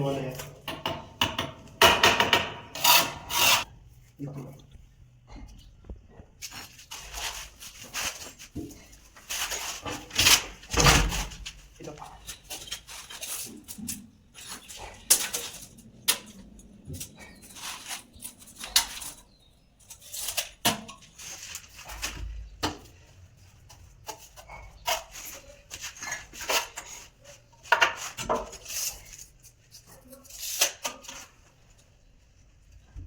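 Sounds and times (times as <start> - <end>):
tools scraping wet concrete: 2.7 - 3.7.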